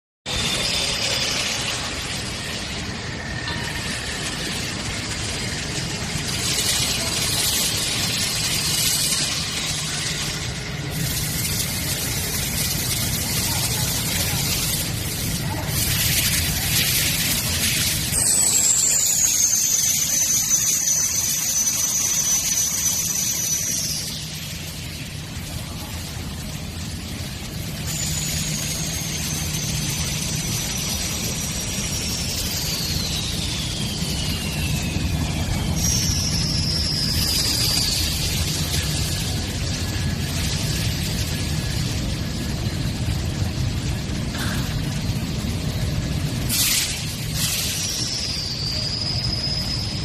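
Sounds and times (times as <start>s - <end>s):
industrial machine noise: 0.3s - 50.0s
machine hiss: 0.3s - 50.0s.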